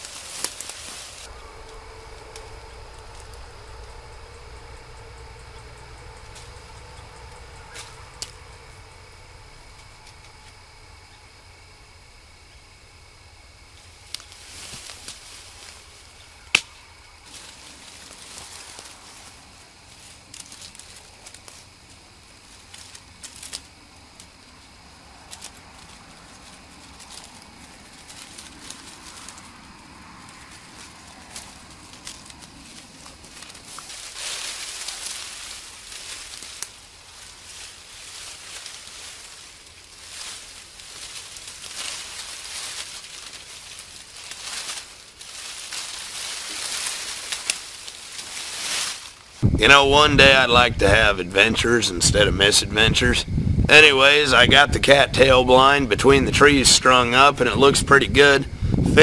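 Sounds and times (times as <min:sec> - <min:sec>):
steady outdoor hiss: 0:00.0 - 0:59.0
light crackles and clicks: 0:30.3 - 0:48.8.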